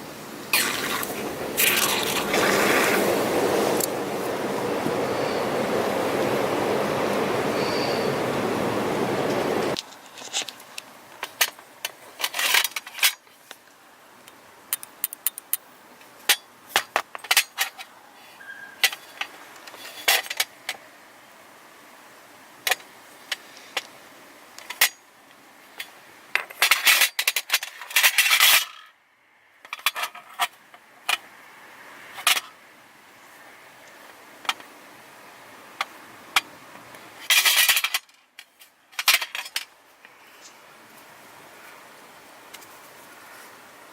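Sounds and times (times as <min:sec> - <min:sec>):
scraping and rattling: 0:00.6 - 0:03.1.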